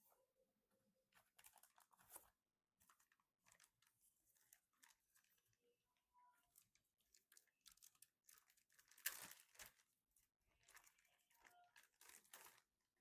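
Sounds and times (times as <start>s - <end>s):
packaging crinkling and tearing: 1.2s - 5.5s, 6.6s - 9.9s, 10.5s - 12.7s.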